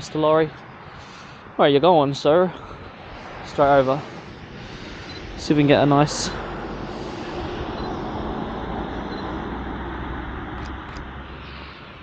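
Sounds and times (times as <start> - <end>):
heavy vehicle engine drone: 0.0 - 12.0.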